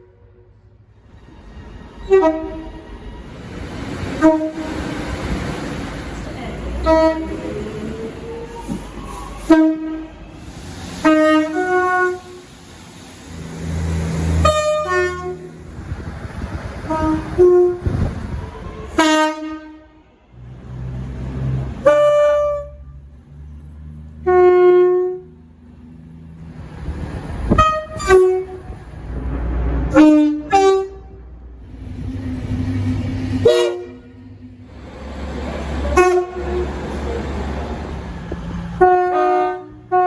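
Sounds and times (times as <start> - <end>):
train engines rumbling: 0.0 - 40.0
train horn blasts: 2.0 - 2.9, 4.0 - 4.9, 6.7 - 7.5, 9.4 - 10.3, 11.0 - 12.5, 14.3 - 15.6, 16.8 - 18.1, 18.9 - 20.1, 21.7 - 23.1, 24.2 - 25.4, 27.5 - 28.8, 29.9 - 31.3, 33.4 - 34.2, 35.8 - 36.9, 38.7 - 40.0.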